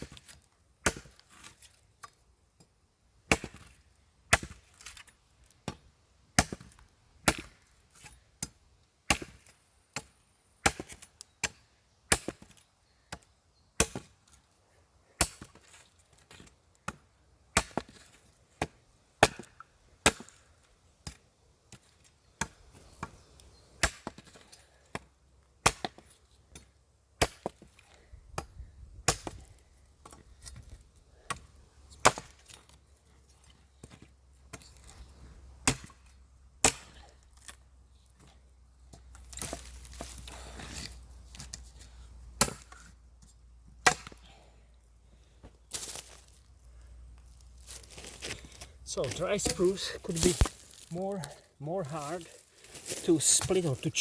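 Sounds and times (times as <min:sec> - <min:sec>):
machete chopping wood: 0:00.8 - 0:01.6, 0:03.3 - 0:05.0, 0:06.4 - 0:07.7, 0:08.4 - 0:14.2, 0:15.2 - 0:17.0, 0:17.6 - 0:20.4, 0:23.8 - 0:27.8, 0:28.4 - 0:30.6, 0:31.3 - 0:32.6, 0:35.6 - 0:37.2, 0:39.3 - 0:41.6, 0:42.4 - 0:42.9, 0:43.7 - 0:44.3, 0:47.7 - 0:51.0.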